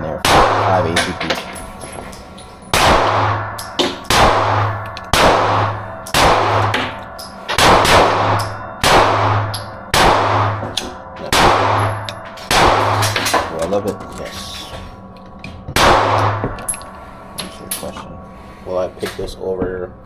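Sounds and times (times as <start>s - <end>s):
pistol shots: 0.2s - 1.8s, 2.6s - 14.0s, 15.7s - 16.8s.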